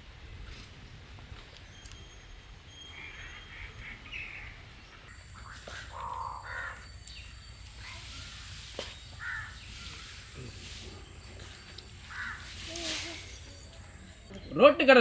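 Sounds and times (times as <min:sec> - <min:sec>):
crows cawing: 0:05.3 - 0:07.4, 0:09.1 - 0:10.2, 0:12.0 - 0:12.8.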